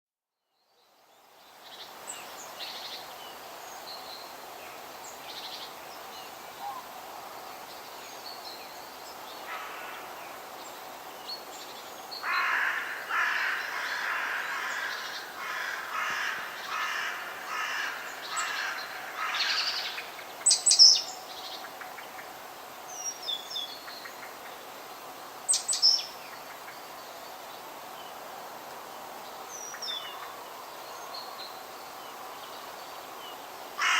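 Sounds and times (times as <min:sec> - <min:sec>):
background hiss: 0:00.4 - 0:33.9
crows cawing: 0:09.5 - 0:10.1, 0:12.2 - 0:20.0.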